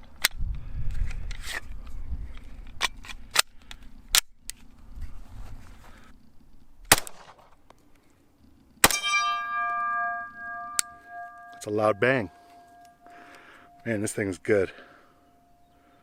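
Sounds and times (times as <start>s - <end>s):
pistol shots: 6.9s - 7.4s, 8.8s - 9.4s
steel plate ringing: 8.8s - 15.7s.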